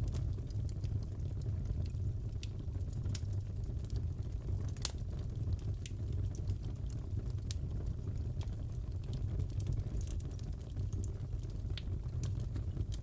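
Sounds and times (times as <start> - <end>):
fire pops and snaps: 0.0 - 13.0
wood fire crackling: 0.0 - 13.0.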